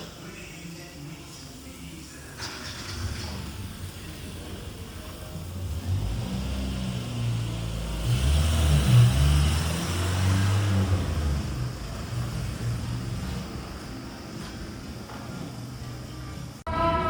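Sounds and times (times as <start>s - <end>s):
car engine and road rumble: 2.1s - 17.0s.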